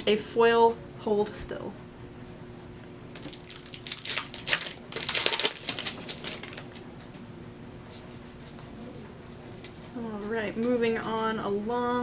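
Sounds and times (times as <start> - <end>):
plastic foil wrapper crinkling: 3.1 - 7.2.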